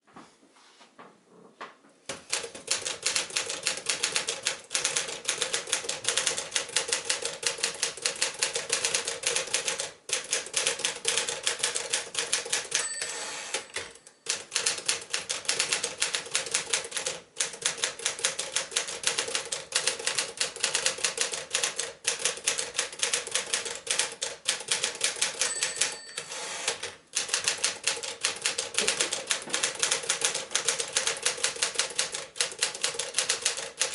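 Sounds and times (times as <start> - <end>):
typewriter margin bell ring: 12.4 - 14.8, 25.1 - 26.9.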